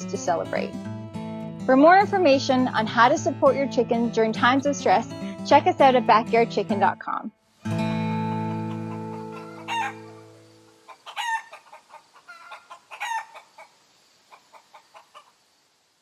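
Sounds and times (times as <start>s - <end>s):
strummed guitar chord ringing: 7.7s - 9.4s
chickens clucking: 8.5s - 15.4s.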